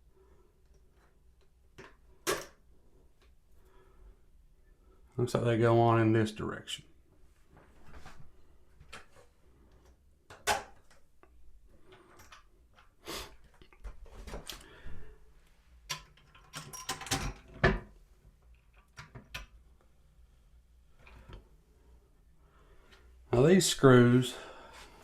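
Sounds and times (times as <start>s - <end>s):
plastic parts and bolts clicking: 15.9s - 17.7s.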